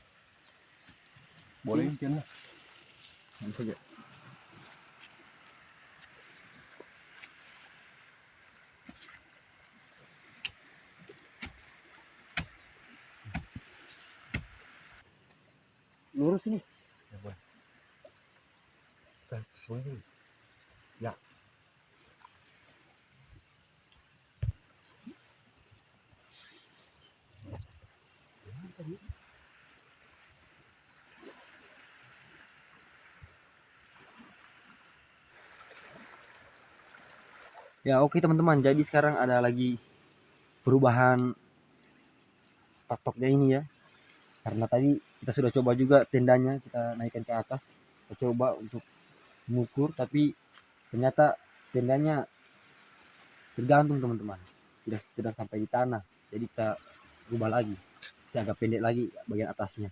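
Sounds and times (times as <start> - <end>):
night insects chirring: 0.0 - 59.9
sharp wooden knocks: 13.3 - 13.7.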